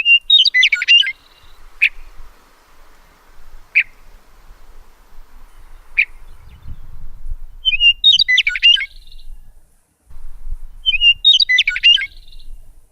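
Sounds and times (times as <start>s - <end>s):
songbird singing: 0.0s - 12.9s
faint low rumble: 9.0s - 11.3s.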